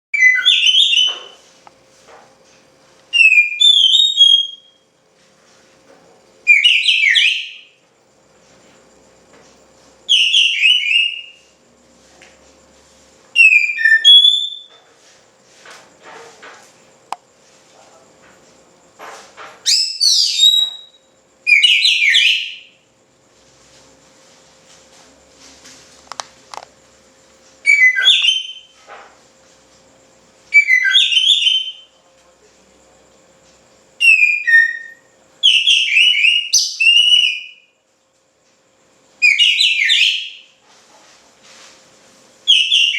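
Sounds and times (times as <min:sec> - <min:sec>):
songbird whistling song: 0:00.2 - 0:01.4, 0:03.1 - 0:04.8, 0:06.5 - 0:07.8, 0:10.1 - 0:11.5, 0:13.3 - 0:14.8, 0:19.6 - 0:22.8, 0:27.6 - 0:28.8, 0:30.5 - 0:32.0, 0:34.0 - 0:37.8, 0:39.2 - 0:40.6, 0:42.4 - 0:42.9.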